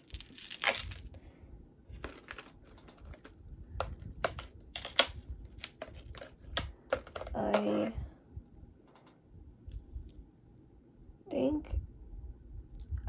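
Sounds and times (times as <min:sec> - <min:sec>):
beads and chain clinking: 0:00.0 - 0:01.1, 0:02.0 - 0:10.6.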